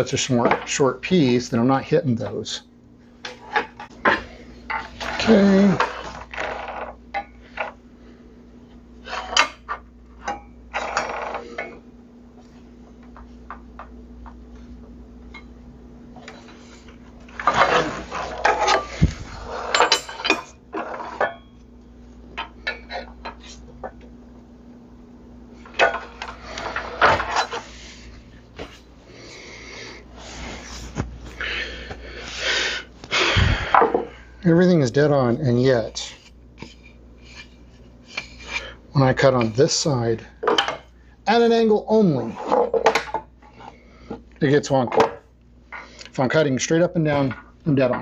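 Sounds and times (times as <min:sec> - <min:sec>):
faint steady hum: 0:00.0 - 0:48.0
wood and tools clattering on workbench: 0:17.3 - 0:21.4, 0:25.6 - 0:27.7, 0:33.7 - 0:34.1, 0:40.4 - 0:40.9, 0:42.4 - 0:44.2, 0:44.9 - 0:45.9.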